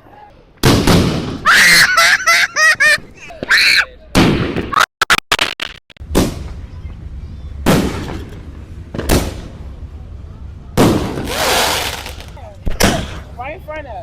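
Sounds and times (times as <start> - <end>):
fireworks banging: 6.0 - 6.7, 7.6 - 9.8, 10.8 - 13.3.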